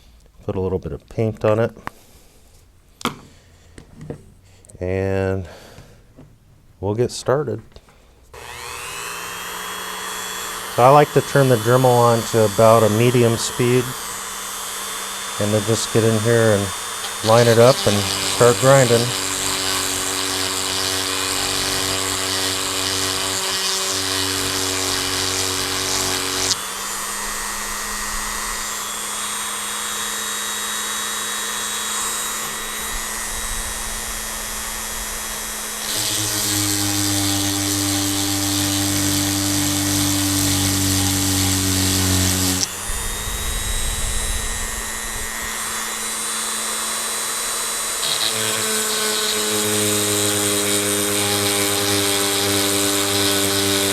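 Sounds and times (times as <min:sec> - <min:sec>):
rotary tool motor whine: 0:08.3 - 0:53.9.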